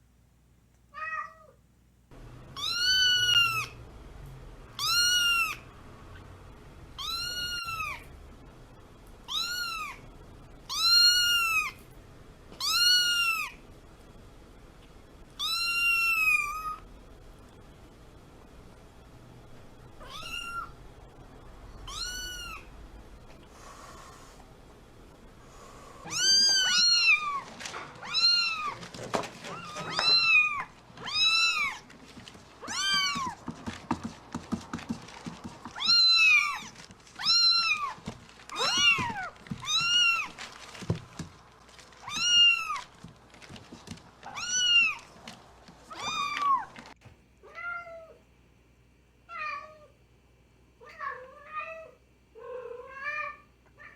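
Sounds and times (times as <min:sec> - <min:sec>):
kitten meowing: 0:02.6 - 0:03.7, 0:04.8 - 0:05.6, 0:07.0 - 0:08.0, 0:09.3 - 0:10.0, 0:10.7 - 0:11.8, 0:12.6 - 0:13.6, 0:15.4 - 0:16.8, 0:20.0 - 0:20.7, 0:21.8 - 0:22.7, 0:26.1 - 0:27.4, 0:28.0 - 0:28.8, 0:29.5 - 0:31.8, 0:32.6 - 0:33.4, 0:35.8 - 0:40.3, 0:42.0 - 0:42.8.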